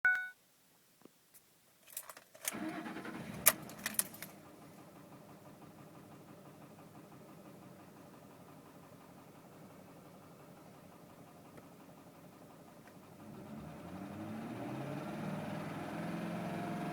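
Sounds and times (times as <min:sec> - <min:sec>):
truck engine cranking and idling: 0:02.4 - 0:16.9
key jangle clicks: 0:03.6 - 0:04.3.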